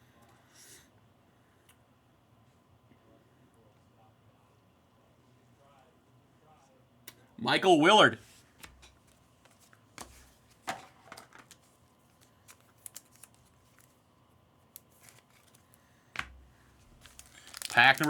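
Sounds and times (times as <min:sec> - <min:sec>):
trading cards clicking and rustling: 0:08.6 - 0:14.0, 0:14.8 - 0:18.0
foil wrappers rustling: 0:09.6 - 0:14.0, 0:14.8 - 0:15.9, 0:16.7 - 0:18.0.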